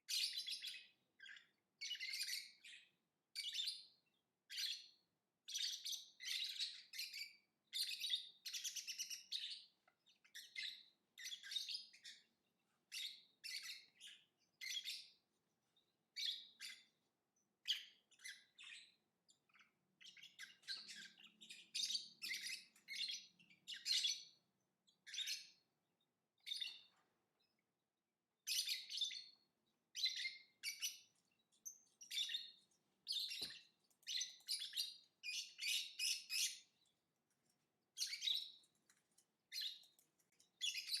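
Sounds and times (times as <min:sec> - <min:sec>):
lovebird chirping: 0:00.1 - 0:03.9, 0:04.5 - 0:12.3, 0:12.9 - 0:15.2, 0:17.6 - 0:25.6, 0:26.4 - 0:26.9, 0:28.4 - 0:36.9, 0:38.0 - 0:38.7, 0:39.5 - 0:40.0, 0:40.6 - 0:41.0.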